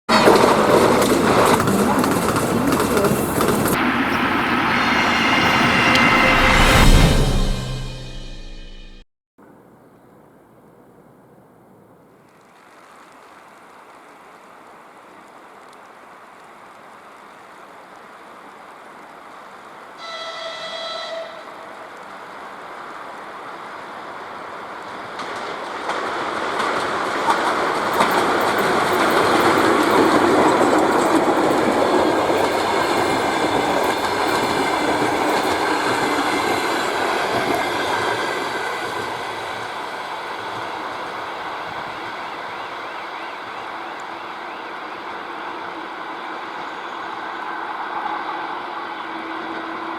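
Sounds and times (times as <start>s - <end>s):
train horn blast: 0.1s - 1.7s, 3.7s - 9.0s, 20.0s - 21.9s
train wheels rushing on rails: 0.1s - 9.0s, 20.0s - 49.9s.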